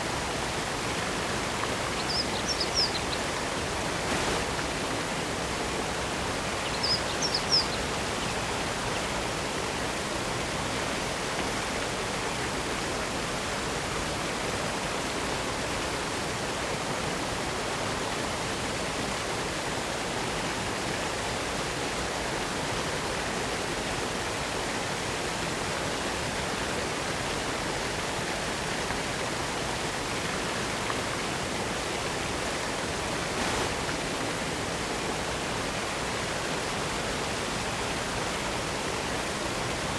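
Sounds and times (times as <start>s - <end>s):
waterfall rushing: 0.1s - 10.3s, 32.0s - 39.9s.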